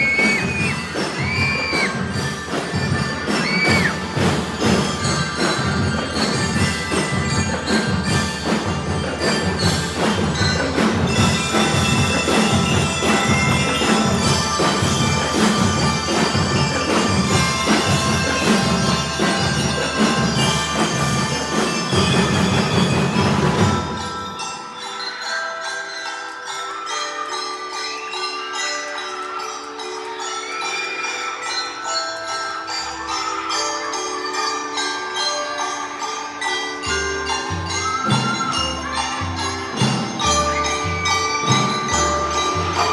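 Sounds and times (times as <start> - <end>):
marching drums beating: 0.0 - 24.3
bell lyres playing melody: 0.0 - 42.9.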